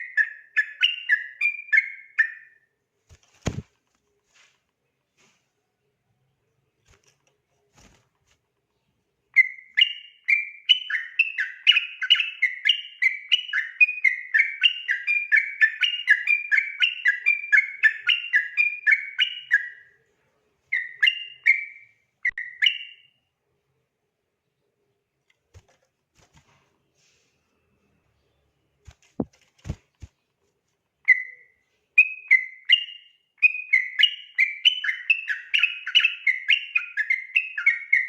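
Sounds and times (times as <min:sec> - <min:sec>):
bird singing whistled notes: 0:00.0 - 0:02.7, 0:09.3 - 0:20.0, 0:20.7 - 0:23.2, 0:31.0 - 0:38.0.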